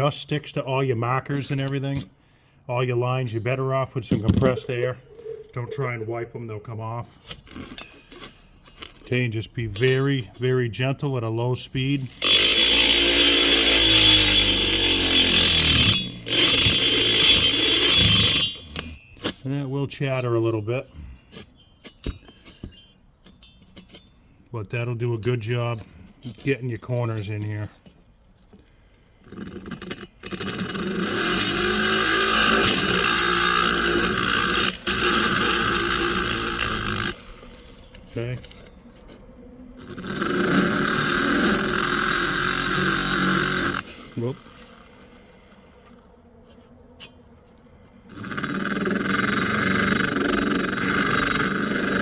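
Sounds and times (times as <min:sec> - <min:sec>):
rotary tool grinding metal: 0:11.8 - 0:24.1, 0:29.2 - 0:46.0, 0:47.0 - 0:52.0.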